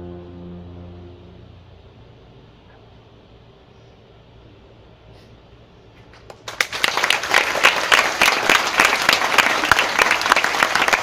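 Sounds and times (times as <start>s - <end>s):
audience applause: 6.3s - 11.0s.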